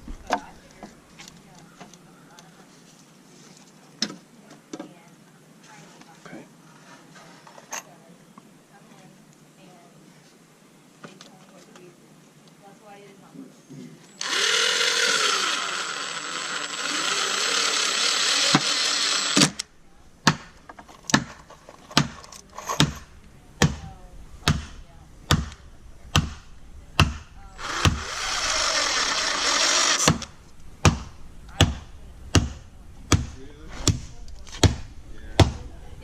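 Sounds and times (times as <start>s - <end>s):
electric power tool running: 14.2s - 19.7s, 27.6s - 30.6s
hammer striking wood: 20.2s - 21.4s, 22.0s - 22.2s, 22.8s - 28.1s, 30.0s - 35.7s.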